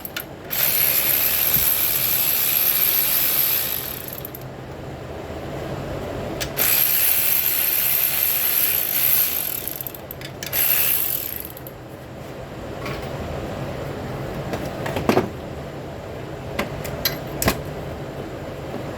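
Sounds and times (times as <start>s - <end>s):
ratchet wrench clicking: 0.0s - 4.4s, 6.5s - 11.7s.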